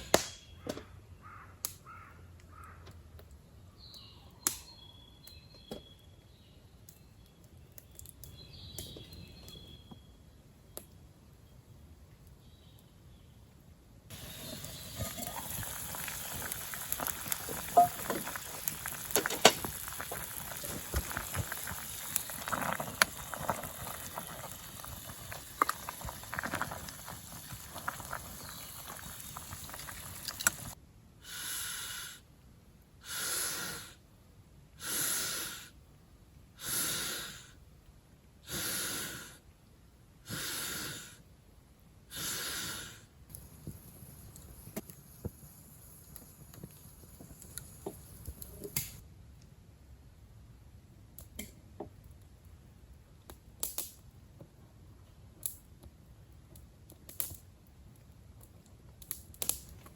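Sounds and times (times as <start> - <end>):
wood fire crackling and popping: 6.8 - 9.9, 14.1 - 30.8, 43.3 - 49.0, 51.1 - 59.9.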